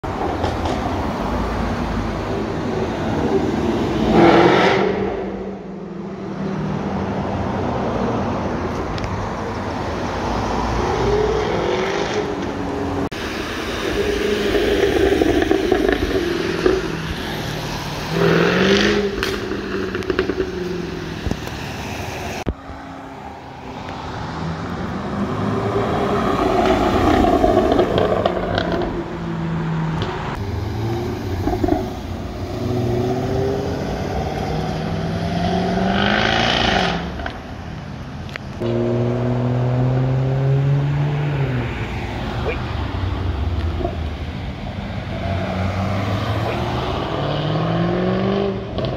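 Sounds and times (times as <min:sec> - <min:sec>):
sports car exhaust accelerating: 0:13.6 - 0:21.4
exhaust pops and crackles: 0:14.5 - 0:17.0, 0:19.1 - 0:20.6.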